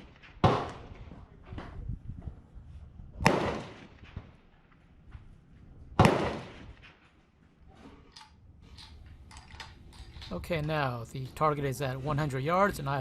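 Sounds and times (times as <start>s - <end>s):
gunshots with echo: 0.0s - 1.0s, 3.2s - 4.3s, 6.0s - 7.0s.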